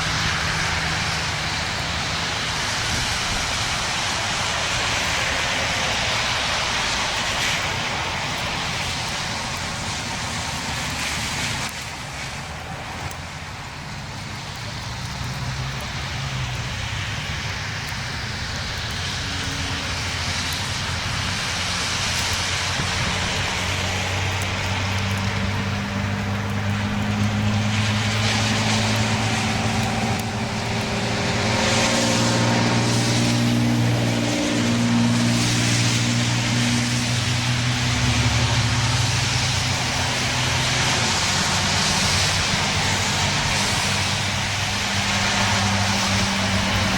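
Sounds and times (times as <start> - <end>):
rotating warning siren: 17.3 - 46.9.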